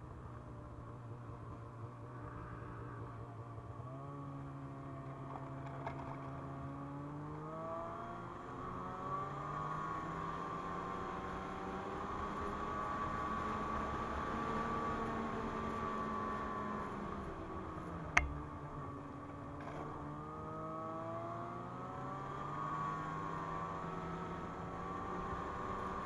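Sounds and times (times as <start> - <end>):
sharp click: 18.2 - 18.5.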